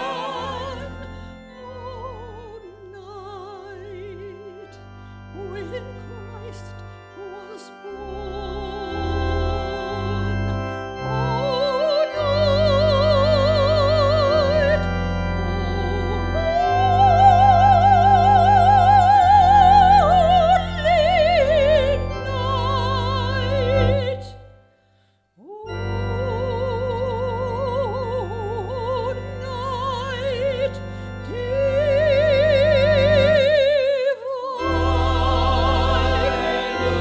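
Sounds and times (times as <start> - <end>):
soprano singing with vibrato: 0.0 - 4.8, 11.1 - 14.9, 25.4 - 37.0
electronic organ chords: 0.0 - 24.7, 25.5 - 37.0.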